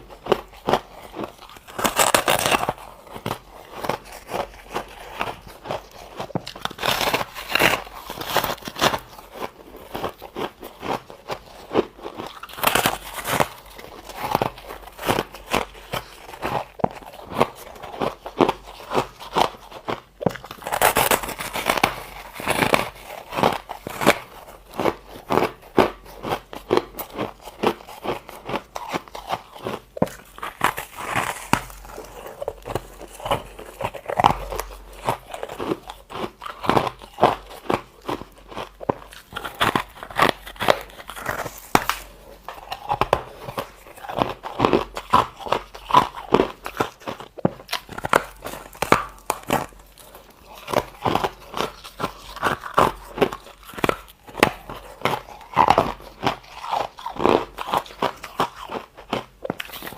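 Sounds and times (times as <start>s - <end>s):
person crunching ice: 0.0s - 59.9s.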